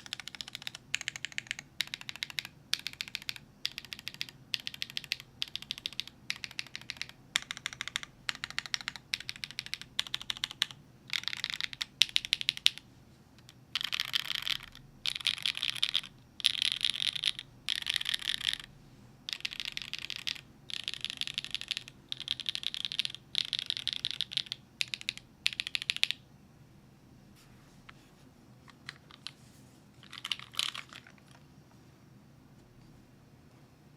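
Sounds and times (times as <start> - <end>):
mechanical keyboard typing: 0.0 - 12.8, 13.4 - 18.7, 19.3 - 26.2, 30.0 - 31.4.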